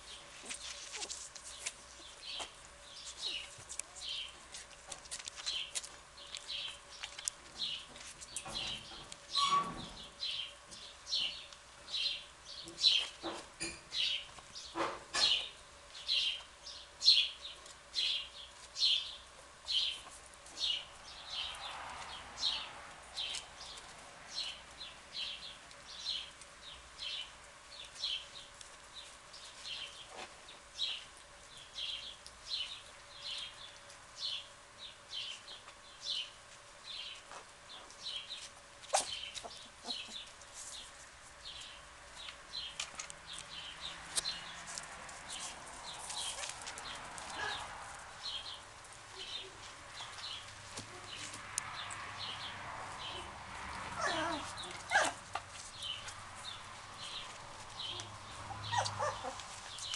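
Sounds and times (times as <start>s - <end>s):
small animal high-pitched calls: 53.9s - 55.2s, 58.4s - 59.6s.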